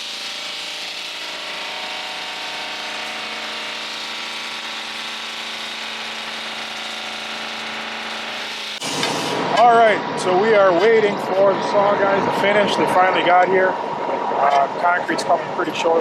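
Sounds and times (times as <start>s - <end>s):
concrete saw cutting concrete: 0.0s - 9.0s.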